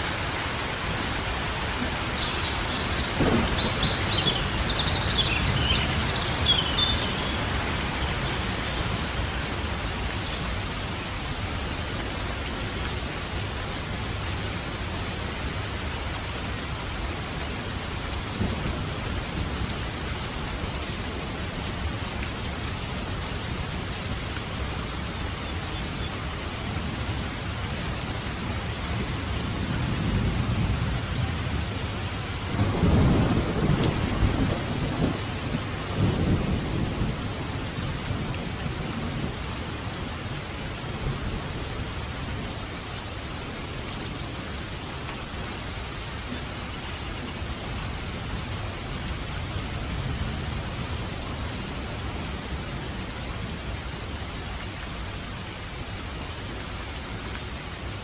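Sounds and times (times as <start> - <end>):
birds chirping: 0.0 - 11.2
distant thunder rumble: 0.0 - 11.2
steady rain falling: 0.0 - 58.0.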